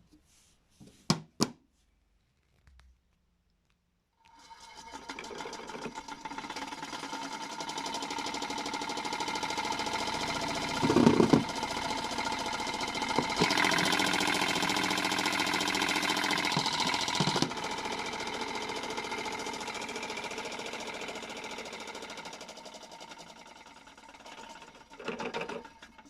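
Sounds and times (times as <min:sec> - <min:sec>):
small motor whining: 0:04.4 - 0:22.1
drum knocking and rattling: 0:08.9 - 0:17.8.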